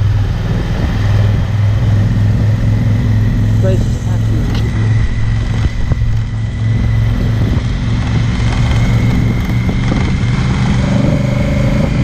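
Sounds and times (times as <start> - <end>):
motorcycle engine running: 0.0 - 12.0.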